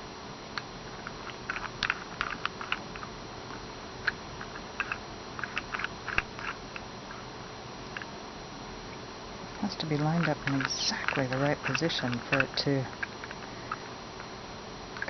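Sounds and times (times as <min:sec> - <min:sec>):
wooden puzzle pieces clicking: 0:01.0 - 0:03.1, 0:04.0 - 0:06.6, 0:10.0 - 0:13.8.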